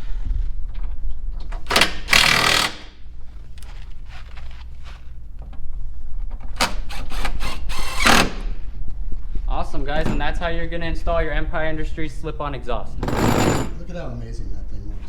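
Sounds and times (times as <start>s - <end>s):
impact wrench bursts: 1.7s - 3.0s, 6.9s - 8.5s, 13.0s - 13.8s.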